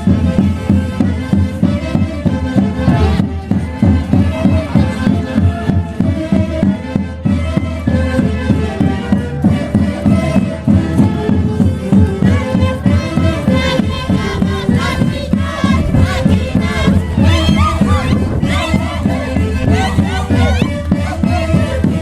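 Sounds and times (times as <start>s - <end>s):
wind instruments playing melody: 0.0s - 22.0s
steady driving beat: 11.9s - 22.0s.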